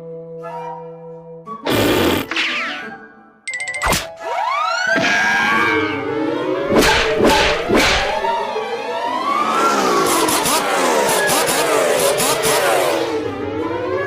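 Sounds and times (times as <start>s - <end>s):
cartoon orchestral music: 0.0s - 8.4s
sharp slapstick hits: 6.7s - 8.3s.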